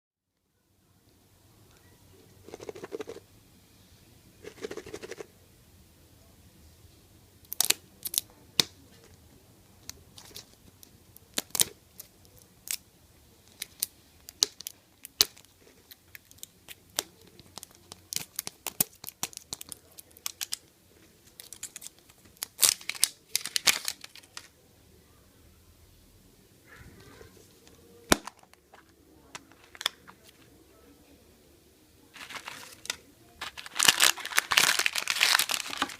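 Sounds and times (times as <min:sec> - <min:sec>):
wrapping crackling: 0:13.5 - 0:24.5, 0:32.1 - 0:35.9
wrapping tearing: 0:13.6 - 0:20.6, 0:21.3 - 0:24.4, 0:32.2 - 0:35.9.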